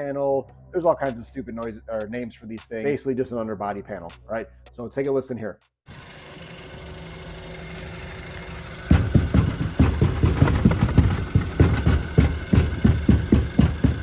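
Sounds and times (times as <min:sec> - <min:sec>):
sharp knocks on metal panel: 0:08.8 - 0:14.0.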